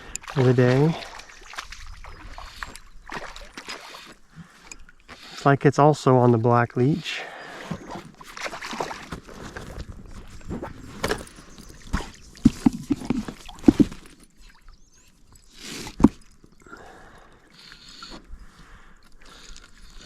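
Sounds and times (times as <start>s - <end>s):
water splashing: 0.0s - 5.6s, 7.4s - 17.0s.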